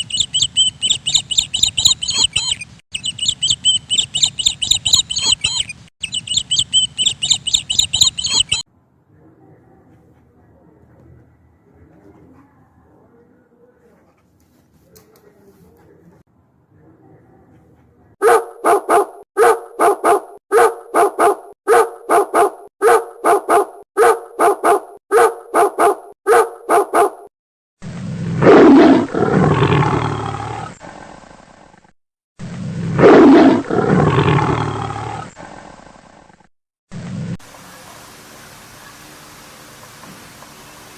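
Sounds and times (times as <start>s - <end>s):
dog barking: 17.0s - 27.3s.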